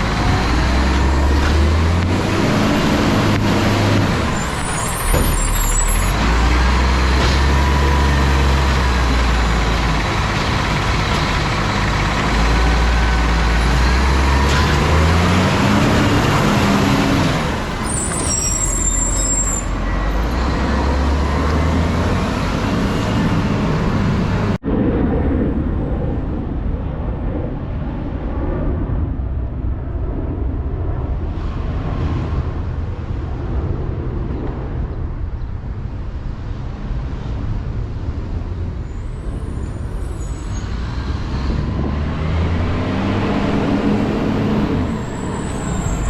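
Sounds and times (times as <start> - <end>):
garbage truck diesel engine revving: 0.0 - 24.6, 40.8 - 46.0.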